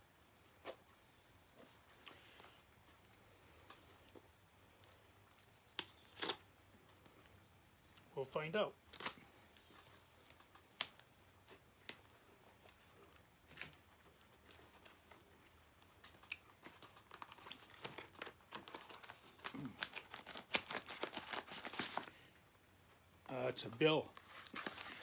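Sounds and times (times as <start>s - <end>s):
paper crinkling and tearing: 6.0s - 6.5s, 8.8s - 22.2s, 24.2s - 25.0s
packaging rustling: 8.8s - 22.3s, 24.1s - 25.0s.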